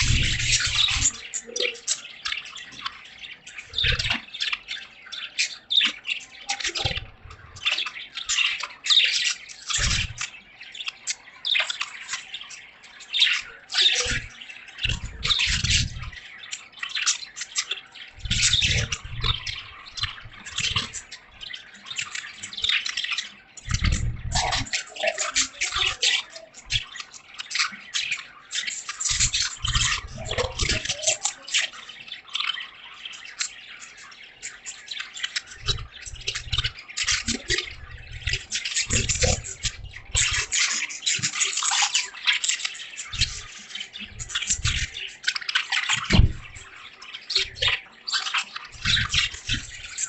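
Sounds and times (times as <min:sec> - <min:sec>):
budgerigars chattering: 0:00.0 - 0:50.0
low thumps: 0:46.1 - 0:46.6.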